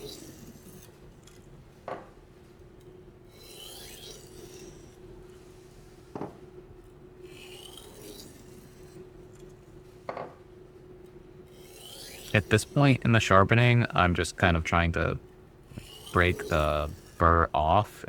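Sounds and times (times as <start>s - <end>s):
blade scraping on whetstone: 3.3s - 5.0s, 7.3s - 9.0s, 11.5s - 12.8s, 15.8s - 17.2s.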